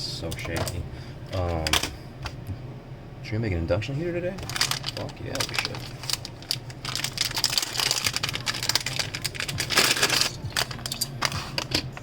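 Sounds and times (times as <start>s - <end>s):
steady low hum: 0.0s - 12.0s
parts rattling and rustling: 4.4s - 12.0s.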